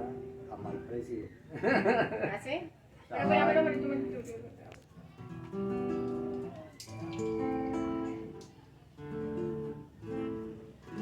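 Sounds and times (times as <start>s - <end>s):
acoustic guitar strummed chords: 5.2s - 8.4s, 9.0s - 11.0s.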